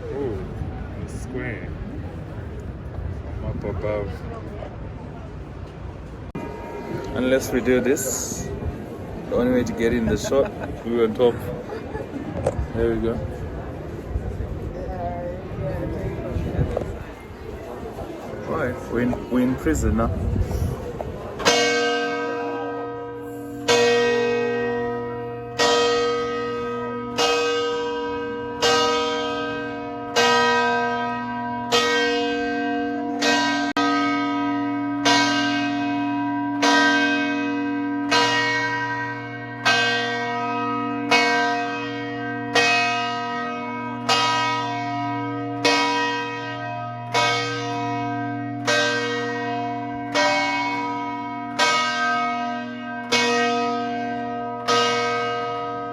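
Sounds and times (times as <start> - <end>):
church bells tolling: 6.2 - 12.1, 16.1 - 55.9.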